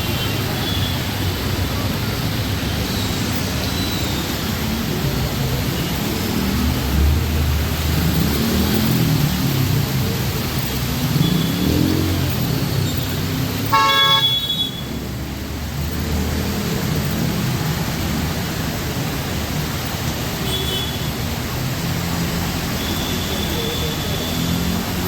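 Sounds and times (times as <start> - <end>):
rain hissing: 0.0 - 25.0
road traffic rumble: 0.0 - 25.0
vehicle horn honking: 13.7 - 14.8.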